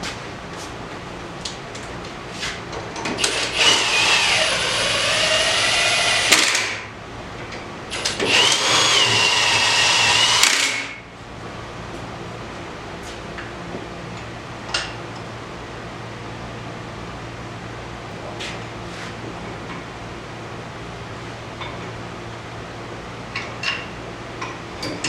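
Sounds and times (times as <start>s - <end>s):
power tool motor whining: 3.2s - 6.8s, 7.9s - 11.0s.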